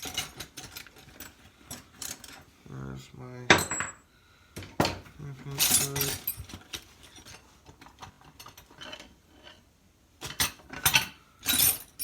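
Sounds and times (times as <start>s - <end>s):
metal tools clinking: 0.0s - 2.5s, 3.5s - 4.0s, 4.8s - 9.6s, 10.2s - 12.0s.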